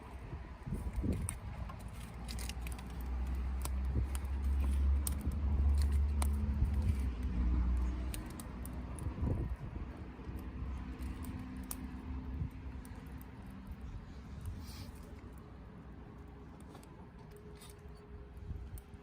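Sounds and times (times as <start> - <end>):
campfire crackles: 0.0 - 19.0
passing vehicle engine rumble: 0.0 - 19.0.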